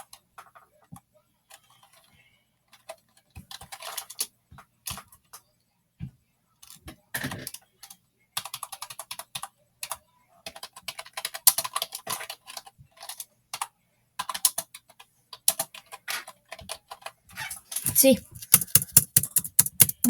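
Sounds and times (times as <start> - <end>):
computer keyboard typing: 17.8 - 20.0.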